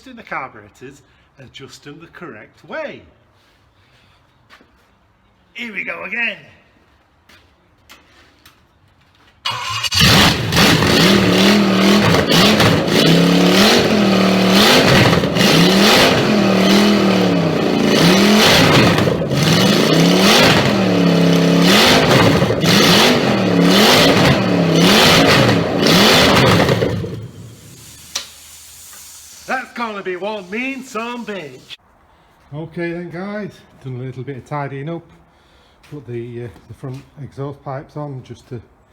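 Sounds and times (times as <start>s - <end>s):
car engine revving: 9.5s - 28.0s, 30.3s - 31.8s.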